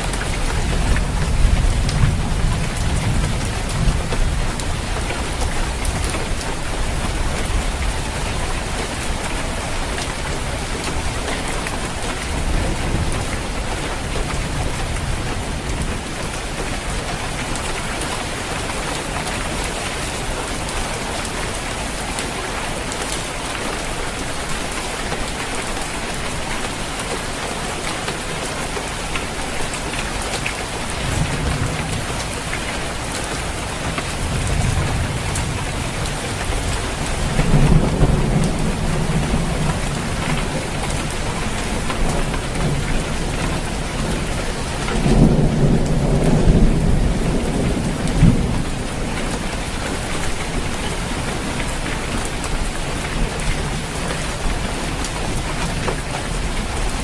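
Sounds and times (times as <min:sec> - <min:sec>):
heavy rain on a roof: 0:00.0 - 0:57.0
thunder rumbling: 0:33.4 - 0:54.0.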